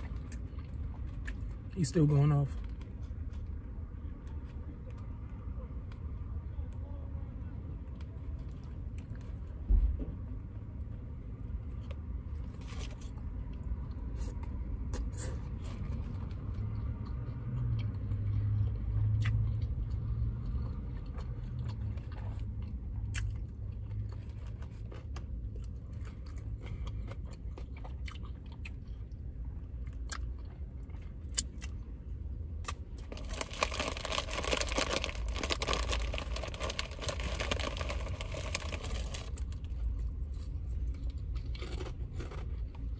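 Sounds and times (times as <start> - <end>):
chewing and crunching food: 0.0 - 6.2, 7.7 - 9.7, 11.4 - 42.9
crisp chips crunching: 32.6 - 42.7
crackling: 33.0 - 39.6.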